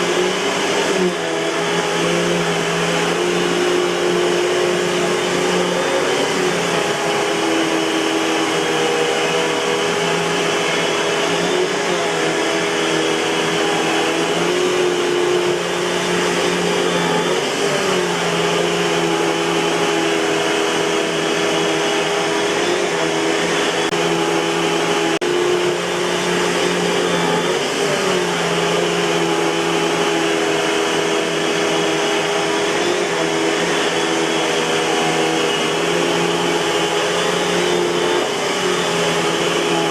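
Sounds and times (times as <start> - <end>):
vacuum cleaner running: 0.0 - 39.9.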